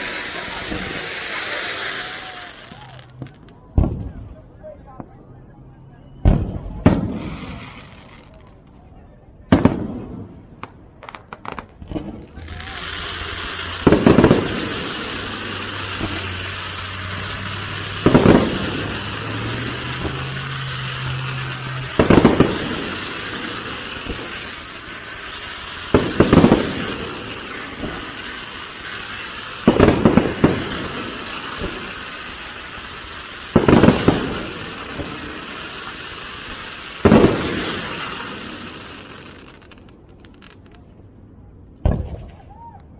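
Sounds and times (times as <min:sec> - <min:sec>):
fireworks booming: 0:00.0 - 0:05.2, 0:06.2 - 0:08.6, 0:09.5 - 0:40.8, 0:41.8 - 0:42.6.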